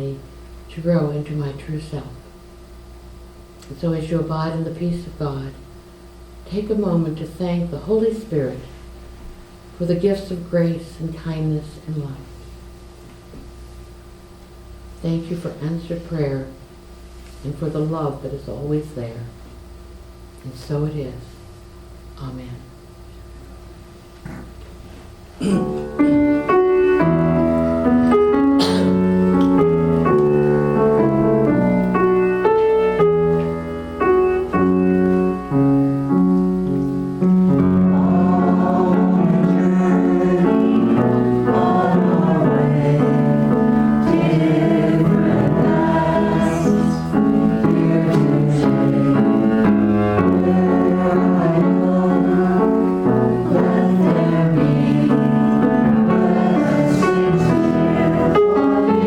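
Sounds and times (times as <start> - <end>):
piano accompaniment: 25.4 - 59.0
choir singing: 37.6 - 59.0.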